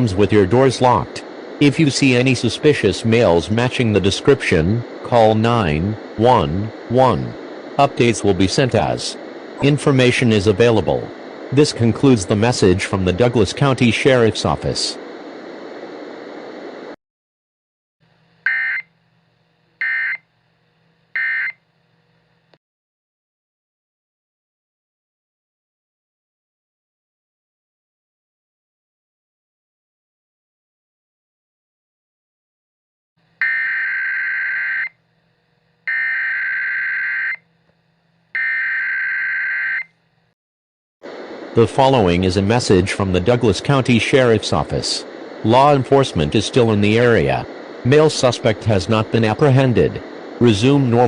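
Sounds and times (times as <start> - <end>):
steady hiss: 0.0 - 17.0, 41.1 - 51.0.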